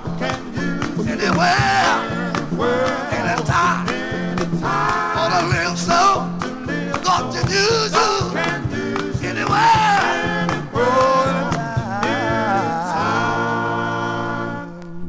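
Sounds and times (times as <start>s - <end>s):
band with bass and beat: 0.0s - 12.8s
gospel group singing: 0.0s - 15.0s.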